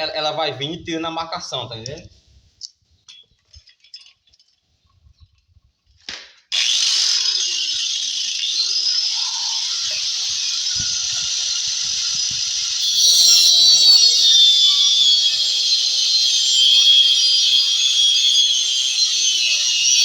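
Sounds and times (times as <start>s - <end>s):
power tool cutting wood: 6.5s - 20.0s.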